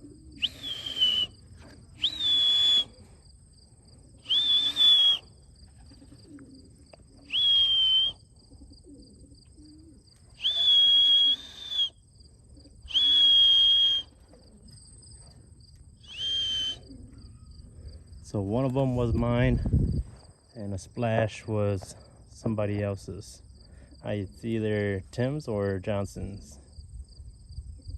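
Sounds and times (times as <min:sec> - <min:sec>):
crickets chirring: 0:00.0 - 0:27.9
short rising whistles: 0:00.4 - 0:01.4, 0:02.0 - 0:03.1, 0:04.2 - 0:05.3, 0:07.3 - 0:08.2, 0:10.4 - 0:12.0, 0:12.9 - 0:14.2, 0:16.0 - 0:17.0.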